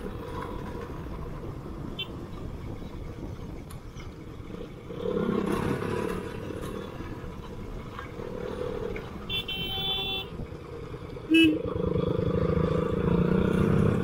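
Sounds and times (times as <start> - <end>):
horn beeping: 9.3 - 10.4.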